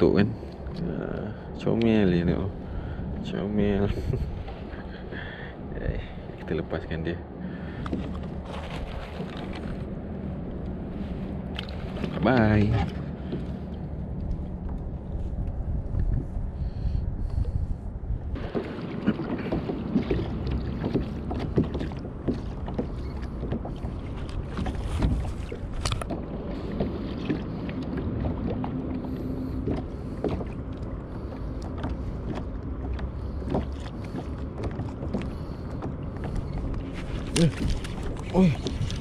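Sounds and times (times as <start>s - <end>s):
water lapping against boat hull: 0.0s - 39.0s
wind rumble on microphone: 0.0s - 39.0s
gear knocking on boat: 18.4s - 30.8s, 31.6s - 39.0s.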